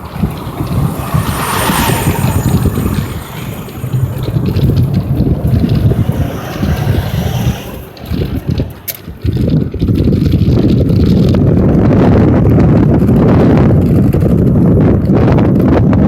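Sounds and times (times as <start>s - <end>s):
highway traffic rumble: 0.0s - 16.0s
wind on microphone: 0.0s - 16.0s.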